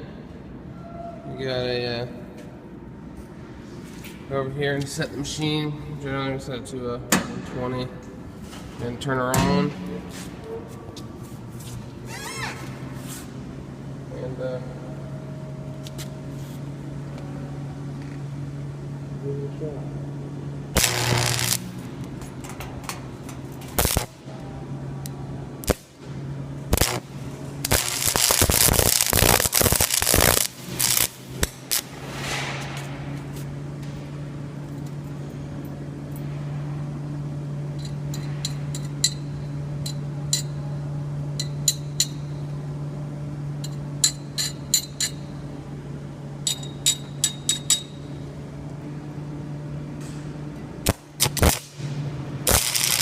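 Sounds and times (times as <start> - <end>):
welder machine hum: 11.3 - 53.0
welding arc crackling: 20.7 - 24.2, 25.6 - 33.4, 50.8 - 53.0.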